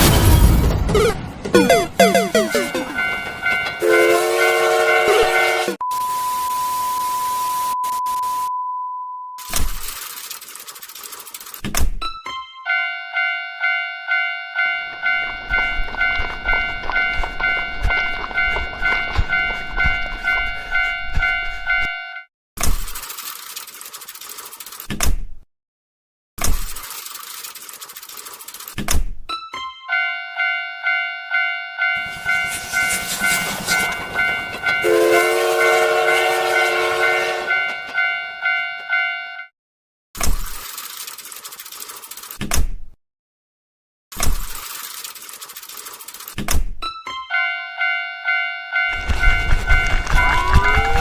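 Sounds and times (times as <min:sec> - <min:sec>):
railroad crossing bell ringing: 0:01.6 - 0:05.8, 0:12.5 - 0:22.3, 0:29.8 - 0:39.5, 0:47.2 - 0:50.9
wheels clacking over rail joints: 0:02.5 - 0:03.8
short burst of noise: 0:32.0 - 0:34.2
train rumbling past: 0:32.0 - 0:37.5.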